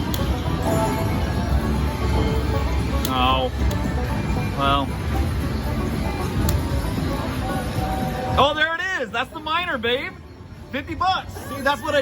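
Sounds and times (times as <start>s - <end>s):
slot machine music and jingles: 0.4s - 3.0s.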